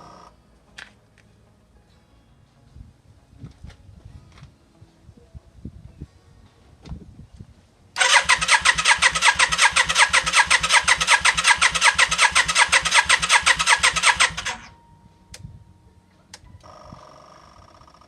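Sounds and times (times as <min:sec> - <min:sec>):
fuel pump ticking rapidly: 0:08.0 - 0:14.7.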